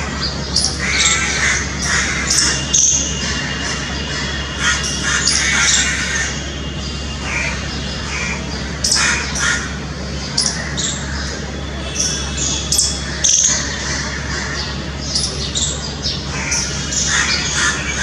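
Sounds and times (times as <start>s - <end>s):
steady low hum: 0.0s - 18.0s
squirrel chirping: 11.9s - 13.7s, 15.1s - 18.0s.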